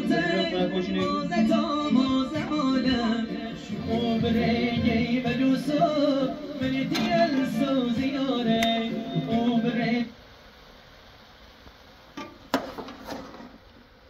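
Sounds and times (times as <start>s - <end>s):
person singing wavering melody: 0.0s - 10.1s
music: 0.0s - 10.2s.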